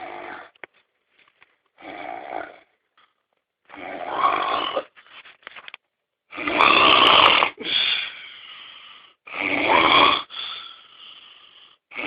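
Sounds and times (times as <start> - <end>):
heavy snoring: 0.0 - 0.6, 1.8 - 2.7, 3.7 - 4.9, 6.3 - 7.8, 9.2 - 10.7.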